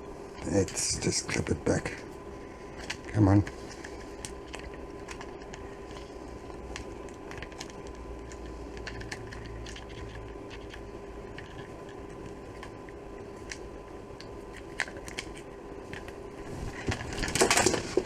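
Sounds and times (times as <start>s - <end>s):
background hum: 0.0s - 18.0s.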